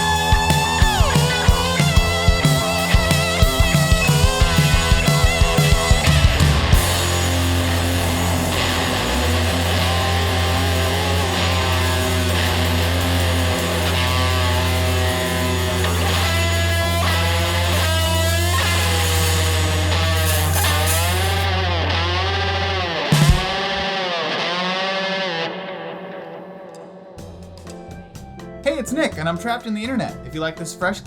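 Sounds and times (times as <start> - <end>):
drum hits: 0.0 - 8.8, 23.2 - 23.8
fuzzy electric guitar: 0.0 - 29.1.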